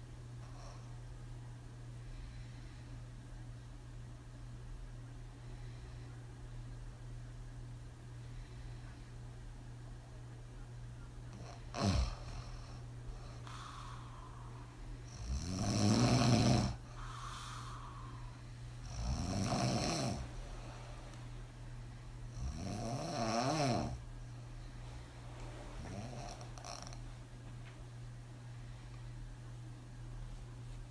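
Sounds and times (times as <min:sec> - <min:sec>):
soft breaths: 0:01.8 - 0:03.6, 0:04.8 - 0:06.9, 0:07.9 - 0:30.9
woman snoring heavily: 0:11.4 - 0:20.4, 0:22.3 - 0:24.0, 0:25.8 - 0:27.0.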